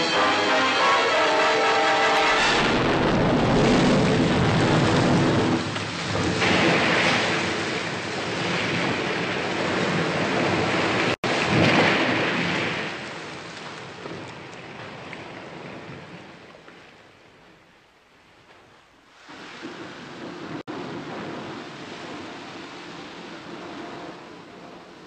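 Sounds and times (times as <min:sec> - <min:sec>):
crashing surf: 0:00.0 - 0:13.5
rushing water: 0:00.0 - 0:25.0.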